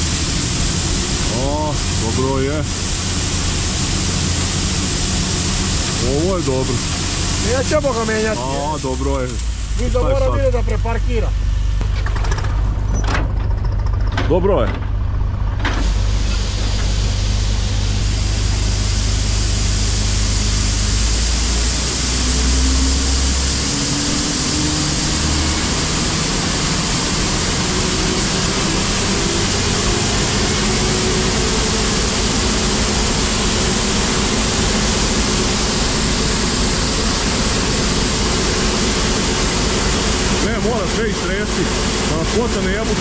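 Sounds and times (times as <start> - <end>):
combine harvester engine running: 0.0 - 43.0
corn pouring into trailer: 5.8 - 10.8.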